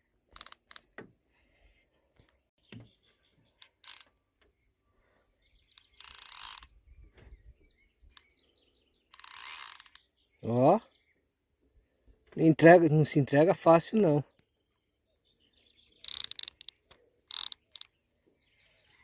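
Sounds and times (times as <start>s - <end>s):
faint bird chirps: 1.6s - 12.2s, 14.3s - 19.0s
fishing reel drag buzzing: 3.6s - 4.1s, 5.8s - 6.8s, 9.1s - 10.1s, 16.0s - 17.9s.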